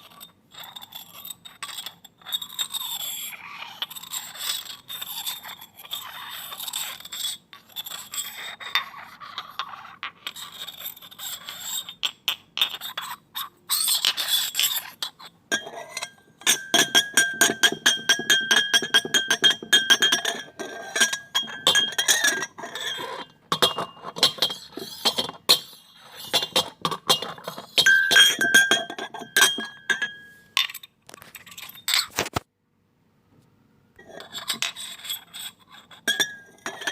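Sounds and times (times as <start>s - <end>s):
glass scraping against glass: 0.0s - 32.4s, 34.0s - 36.9s
glasses clinking and ringing: 15.5s - 30.8s, 36.1s - 36.9s.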